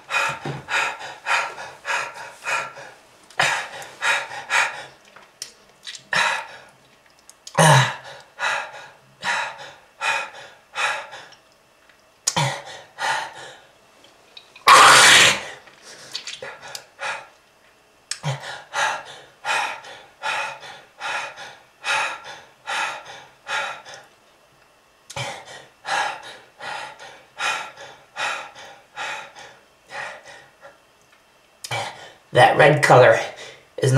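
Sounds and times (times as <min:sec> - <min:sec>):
person coughing: 0:07.6 - 0:08.0.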